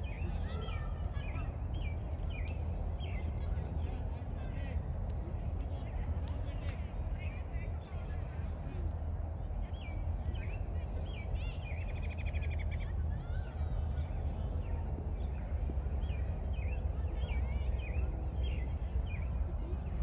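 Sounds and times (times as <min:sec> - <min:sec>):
small birds chirping: 0:00.0 - 0:03.4, 0:09.7 - 0:20.0.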